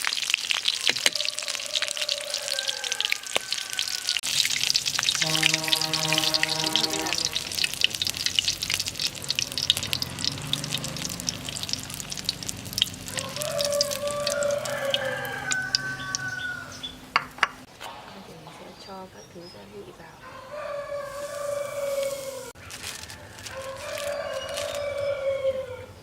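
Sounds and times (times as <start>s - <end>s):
fish frying in hot oil: 0.0s - 16.7s
pitched calls in background: 0.8s - 17.7s.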